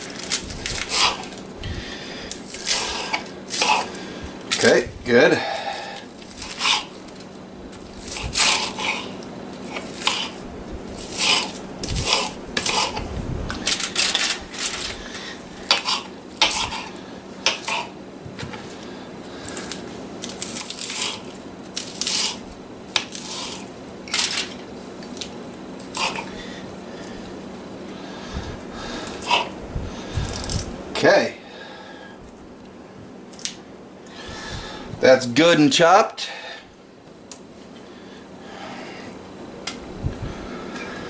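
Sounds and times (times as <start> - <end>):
knife chopping lettuce on board: 11.0 - 13.0, 15.7 - 17.9.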